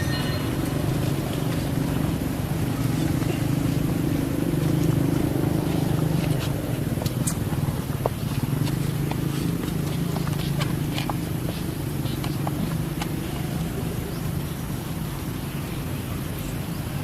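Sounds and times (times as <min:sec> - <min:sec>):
low motor-like drone: 0:00.0 - 0:11.9.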